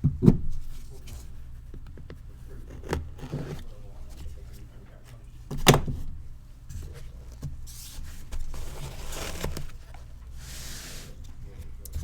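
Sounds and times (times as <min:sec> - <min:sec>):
knock on cardboard box: 0:00.0 - 0:00.7
cardboard and wrappers rustling: 0:02.2 - 0:12.0.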